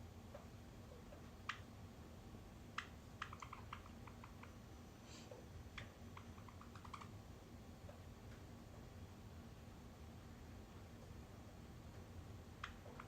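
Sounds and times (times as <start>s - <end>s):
clicks and taps on hard surface: 2.8s - 4.6s.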